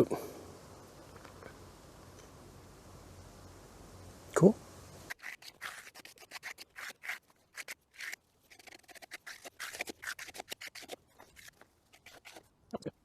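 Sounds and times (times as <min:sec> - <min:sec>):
trowel scraping wet concrete: 0:05.1 - 0:12.5.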